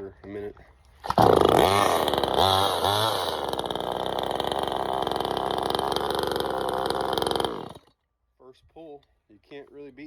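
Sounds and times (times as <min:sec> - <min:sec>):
chainsaw idling: 0:01.0 - 0:07.9
chainsaw starting and revving: 0:01.0 - 0:08.0.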